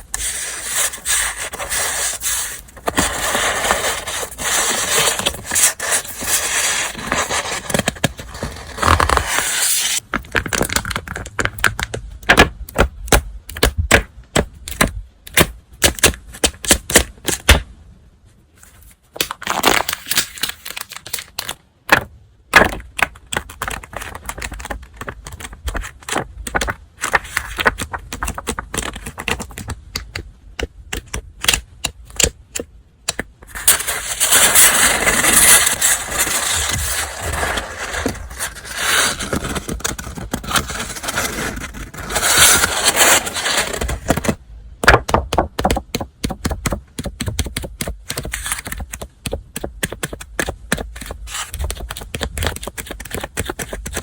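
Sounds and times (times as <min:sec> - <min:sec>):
packaging crackles and clicks: 0:10.0 - 0:12.0, 0:19.2 - 0:21.6
crinkly packaging rustling: 0:18.8 - 0:21.6.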